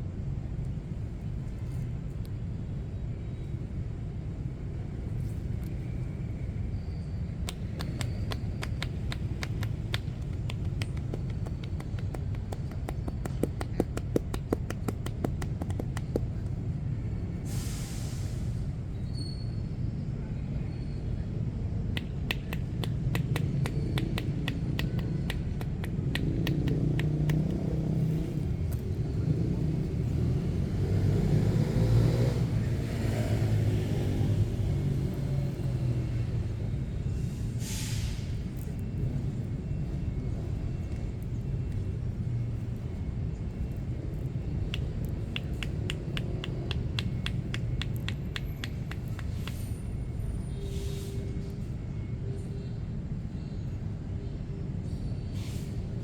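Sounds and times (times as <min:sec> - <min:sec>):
low rumble of street traffic: 0:00.0 - 0:56.0
hands tapping on a body: 0:07.4 - 0:16.6, 0:22.0 - 0:28.3, 0:44.7 - 0:49.7
short hiss: 0:17.5 - 0:18.6, 0:37.6 - 0:38.4.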